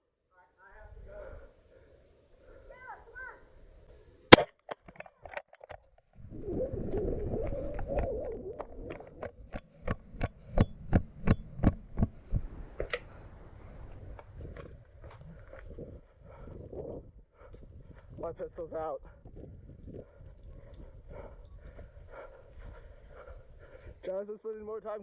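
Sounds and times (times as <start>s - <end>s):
airsoft pistol cracks: 4.3s - 4.8s.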